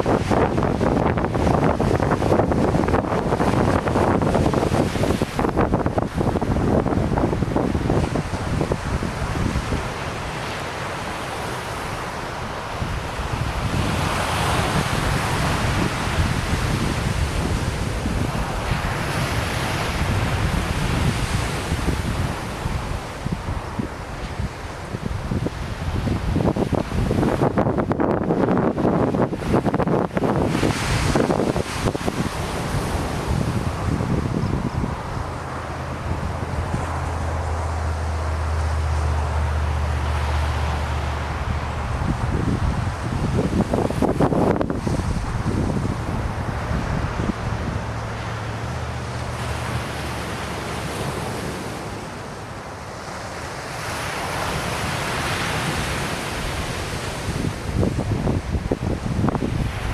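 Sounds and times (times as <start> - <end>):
ocean surf washing onto beach: 0.0 - 59.9
wind buffeting microphone: 0.0 - 59.9
vehicle engine drone passing: 33.0 - 52.4.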